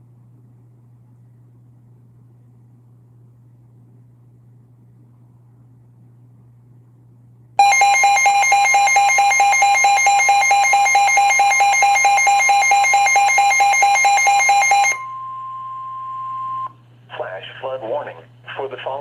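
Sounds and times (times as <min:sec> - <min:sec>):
steady alarm tone: 0:07.6 - 0:16.7.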